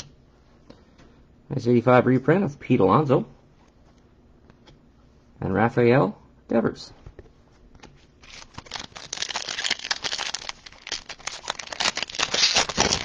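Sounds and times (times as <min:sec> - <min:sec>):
foil wrapper tearing and crinkling: 0:08.2 - 0:13.0.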